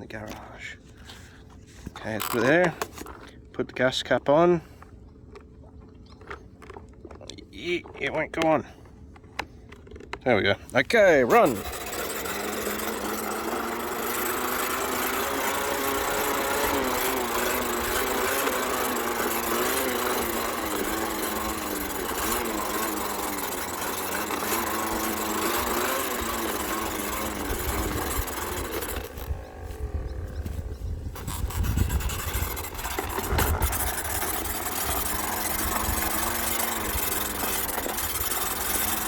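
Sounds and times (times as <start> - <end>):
toy motor whining: 2.0 - 3.2, 10.7 - 39.0.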